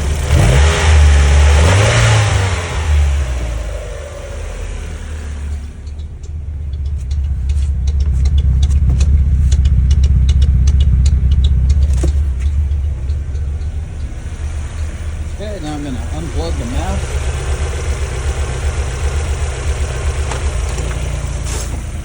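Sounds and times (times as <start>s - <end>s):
car engine idling: 0.0s - 22.0s
sharp engine clicks: 5.4s - 22.0s.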